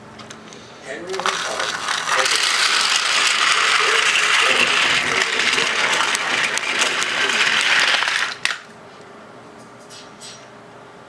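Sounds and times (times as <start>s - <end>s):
toy train motor whirring: 0.9s - 8.7s.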